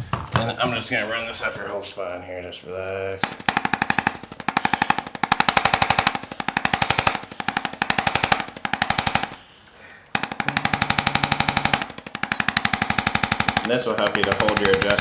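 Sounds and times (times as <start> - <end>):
trigger instrument rapid taps: 3.2 - 15.0.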